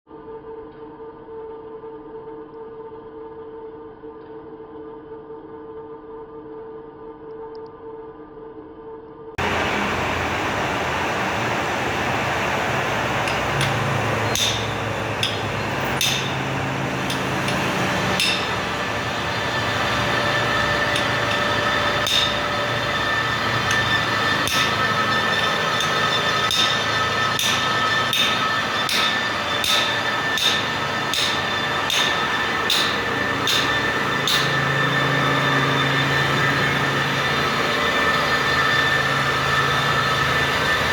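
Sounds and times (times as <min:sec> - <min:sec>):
metal lathe humming: 0:09.4 - 0:40.9
sharp metallic knocks: 0:09.4 - 0:40.9.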